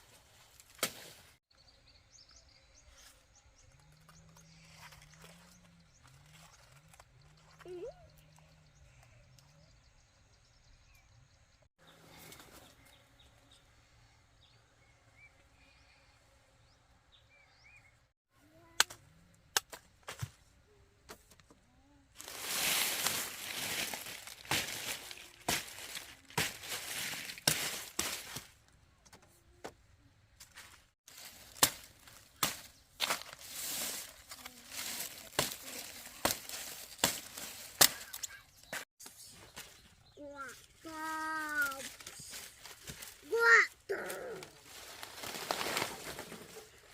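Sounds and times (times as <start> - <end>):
dry stalks snapping: 0.5 - 1.2, 22.2 - 28.6, 31.1 - 38.8
dry leaves rustling and crunching: 22.2 - 28.6, 31.1 - 38.8, 40.9 - 46.9.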